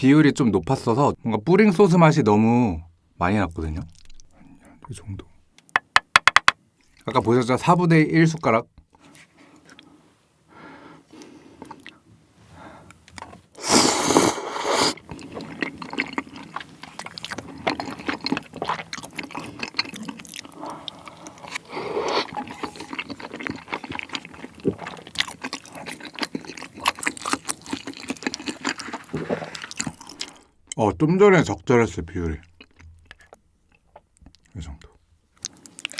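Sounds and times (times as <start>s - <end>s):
chewing and wet mouth noises: 11.2s - 12.0s, 14.9s - 30.5s, 32.4s - 35.9s.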